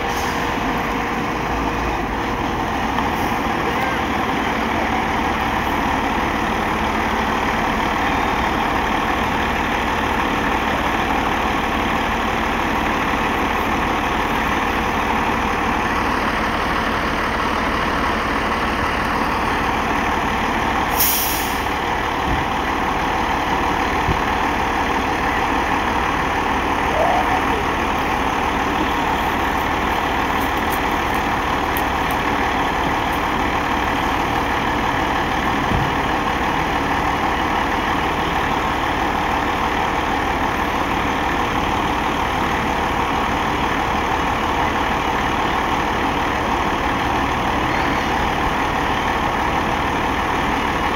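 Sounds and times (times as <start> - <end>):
fire engine running: 0.0 - 50.9
air brakes hiss: 20.9 - 21.7.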